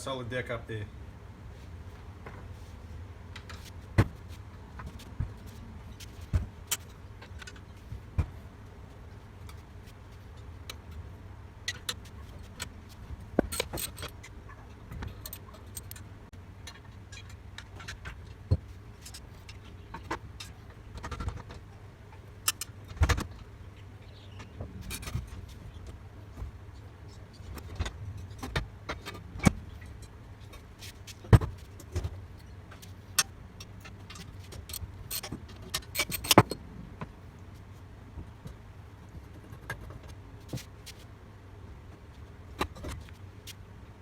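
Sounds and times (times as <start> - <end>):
steady low hum: 0.0 - 44.0.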